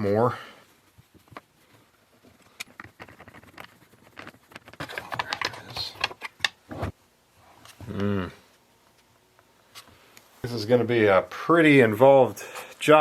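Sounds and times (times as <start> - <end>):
tools and plastic parts clicking: 2.6 - 6.6.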